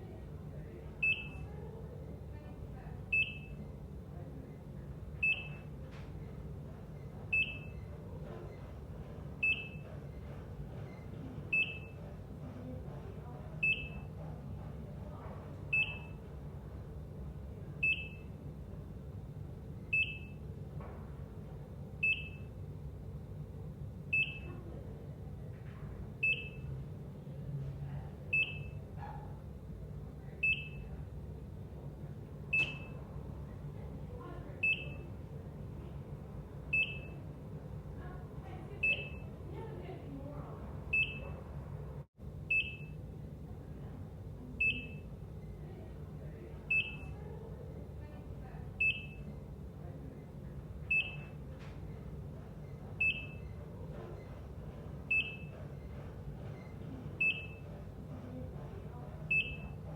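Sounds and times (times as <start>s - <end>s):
heart monitor beeping: 1.0s - 1.5s, 3.1s - 3.8s, 5.2s - 6.4s, 7.2s - 7.9s, 8.5s - 12.2s, 13.6s - 14.2s, 15.6s - 16.3s, 17.8s - 18.4s, 19.8s - 20.5s, 22.0s - 22.6s, 24.1s - 24.6s, 26.2s - 26.8s, 28.3s - 29.0s, 30.4s - 31.0s, 32.5s - 33.0s, 34.6s - 35.2s, 36.7s - 37.3s, 38.8s - 39.3s, 40.9s - 41.4s, 42.5s - 43.0s, 44.6s - 45.1s, 46.7s - 47.2s, 48.7s - 49.4s, 50.8s - 59.9s.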